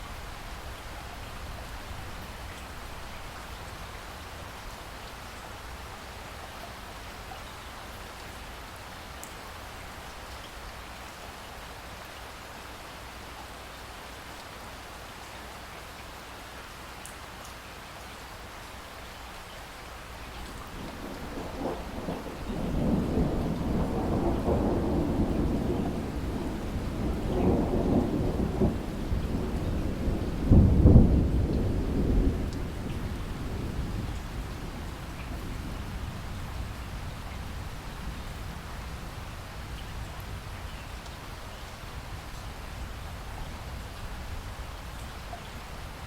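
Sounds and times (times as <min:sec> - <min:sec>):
steady rainfall: 0:00.0 - 0:46.0
thunder rolling: 0:20.7 - 0:39.2.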